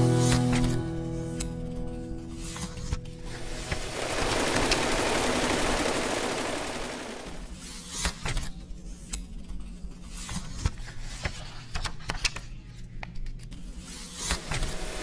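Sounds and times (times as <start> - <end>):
low steady hum: 0.0 - 7.6.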